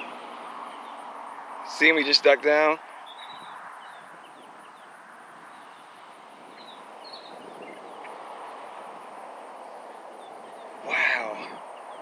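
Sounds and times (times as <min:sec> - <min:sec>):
distant traffic hum: 0:00.0 - 0:12.0
bird chirps: 0:03.0 - 0:04.9, 0:05.5 - 0:08.2.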